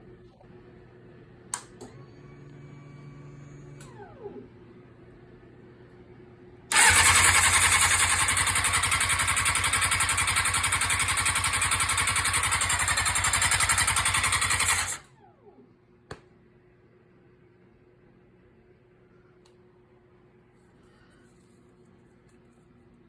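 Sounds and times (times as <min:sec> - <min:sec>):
engine cranking with starter: 0:06.7 - 0:15.1.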